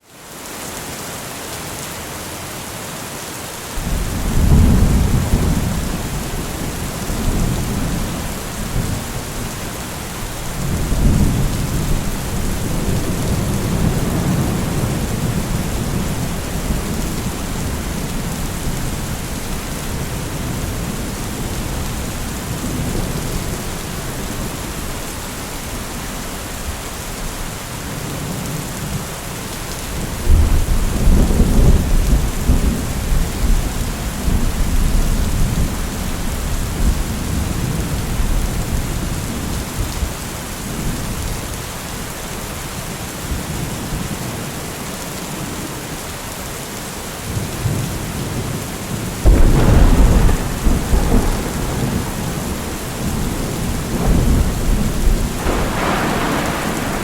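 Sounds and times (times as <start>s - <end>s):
heavy rain: 0.0s - 57.0s
rolling thunder: 3.8s - 24.5s, 49.1s - 57.0s.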